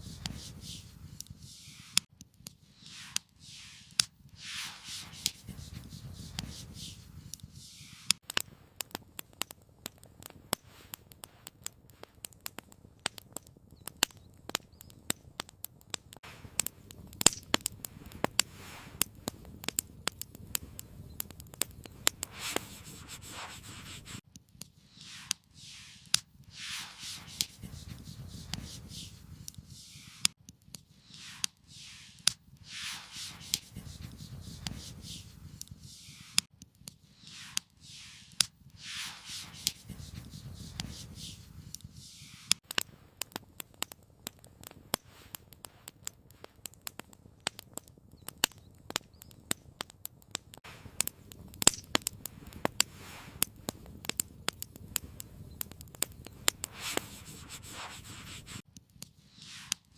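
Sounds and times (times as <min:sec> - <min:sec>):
soft swishing rustles: 0:00.0 - 0:02.0, 0:02.7 - 0:08.1, 0:22.2 - 0:24.2, 0:24.9 - 0:30.3, 0:31.0 - 0:36.5, 0:37.2 - 0:42.6, 0:56.7 - 0:58.6
wood fire crackling: 0:00.0 - 0:59.9.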